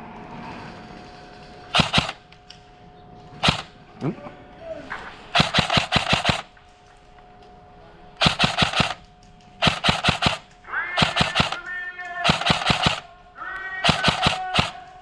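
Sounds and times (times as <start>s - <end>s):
airsoft guns firing: 1.7s - 2.3s, 3.4s - 3.8s, 5.3s - 6.6s, 8.2s - 15.0s.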